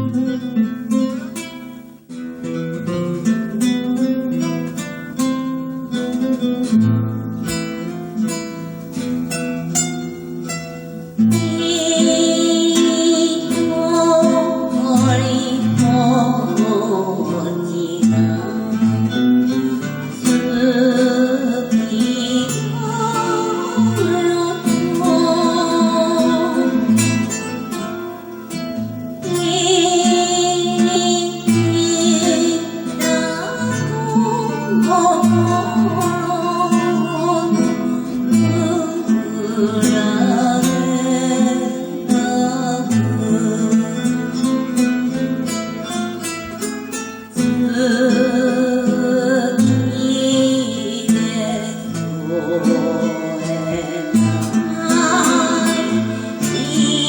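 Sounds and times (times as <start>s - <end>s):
acoustic guitar strummed and plucked: 0.0s - 57.0s
fuller accompaniment with wavering melody: 0.0s - 57.0s.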